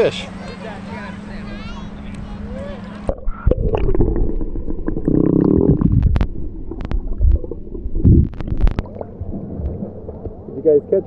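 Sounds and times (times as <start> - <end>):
underwater sloshing and gurgling: 3.0 - 11.0.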